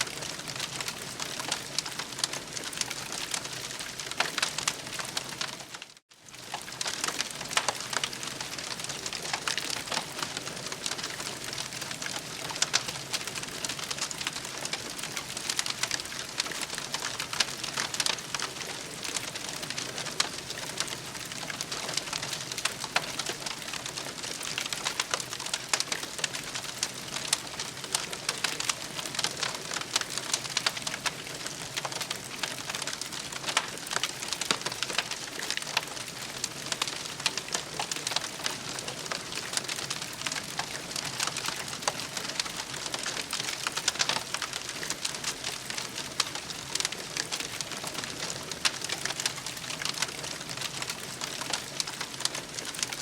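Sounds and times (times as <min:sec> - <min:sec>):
campfire crackling: 0:00.0 - 0:53.0.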